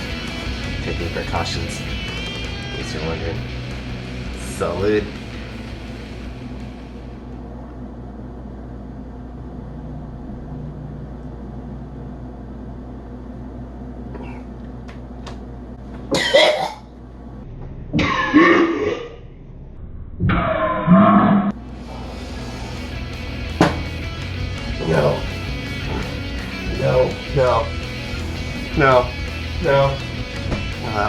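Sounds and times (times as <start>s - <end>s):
steady low hum: 0.0s - 31.0s
man gagging and coughing: 16.1s - 16.9s.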